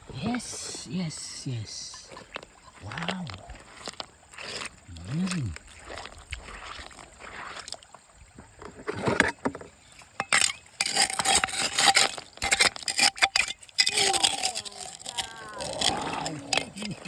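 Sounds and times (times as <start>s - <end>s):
water sloshing and splashing: 2.1s - 13.0s
knocks and scrapes: 8.4s - 17.0s.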